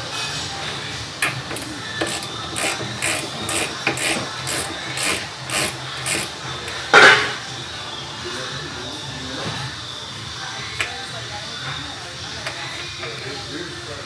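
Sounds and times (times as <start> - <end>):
hand ratchet rasping: 1.2 - 6.9.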